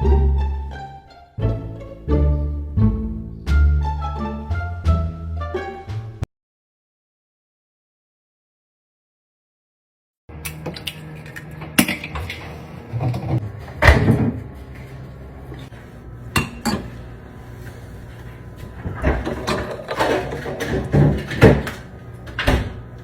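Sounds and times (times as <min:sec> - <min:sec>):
hard objects clattering: 0:18.7 - 0:22.0.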